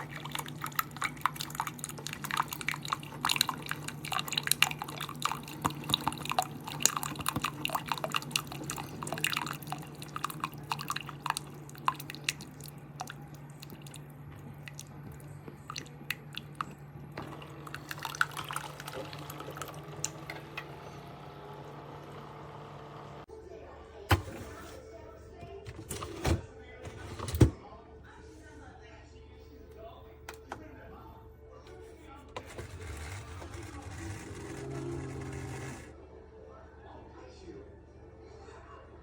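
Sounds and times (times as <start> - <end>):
coffee dripping into a mug: 0.0 - 20.2
coffee machine humming: 0.0 - 23.3, 32.3 - 36.0.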